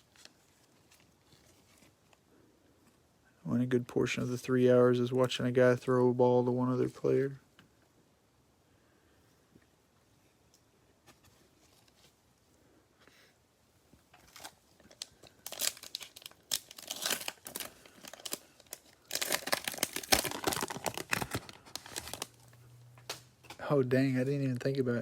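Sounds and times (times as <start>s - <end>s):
wrapper tearing and crinkling: 14.2s - 22.5s.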